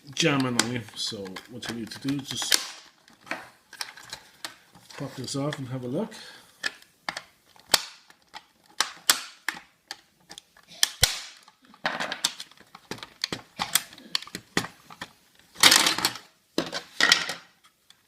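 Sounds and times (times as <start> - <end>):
plastic clicks and snaps: 6.6 - 16.2.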